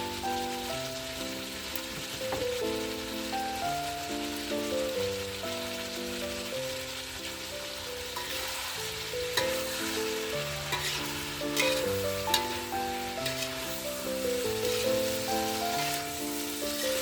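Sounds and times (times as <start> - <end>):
food sizzling in a pan: 0.0 - 17.0
gentle background music: 0.0 - 17.0
utensil scraping a pan: 8.2 - 8.7, 9.3 - 17.0.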